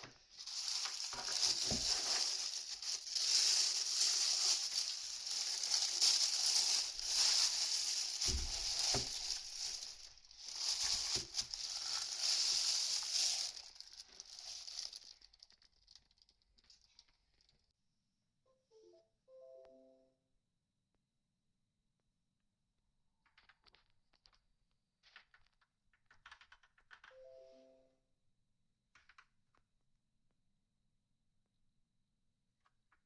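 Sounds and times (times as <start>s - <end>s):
plastic packaging rustling: 0.0s - 17.2s.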